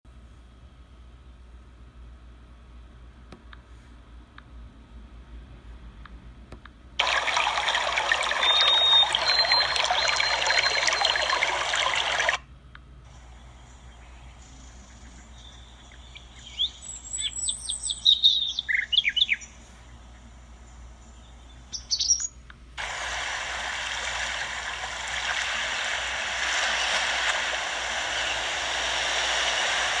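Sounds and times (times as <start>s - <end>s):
birdsong chirps and whistles: 7.0s - 12.4s, 13.4s - 22.4s, 24.4s - 30.0s
faint background hiss: 12.5s - 30.0s
steady rushing noise: 22.8s - 30.0s.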